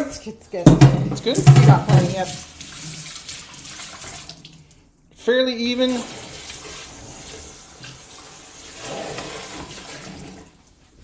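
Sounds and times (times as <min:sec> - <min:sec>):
tap running into sink: 0:00.6 - 0:02.5.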